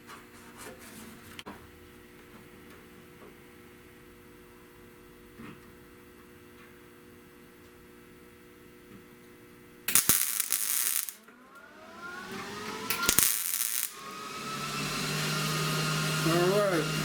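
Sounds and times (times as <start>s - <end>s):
loud hissing bursts: 9.9s - 11.2s.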